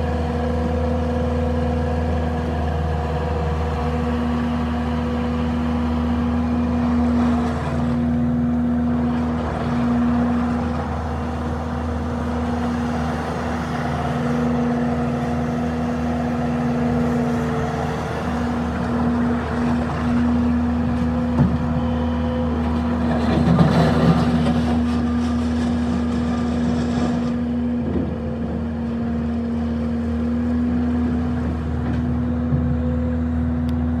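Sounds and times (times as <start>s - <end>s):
diesel engine running: 0.0s - 34.0s.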